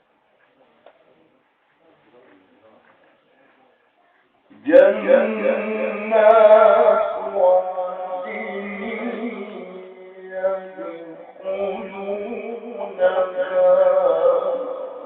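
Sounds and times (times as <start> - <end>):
man chanting melodically: 4.5 - 15.0.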